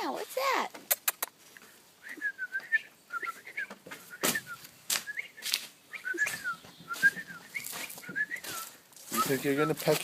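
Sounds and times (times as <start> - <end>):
baby bird peeping: 2.7 - 9.4
sharp scuffs or clicks: 3.7 - 10.0.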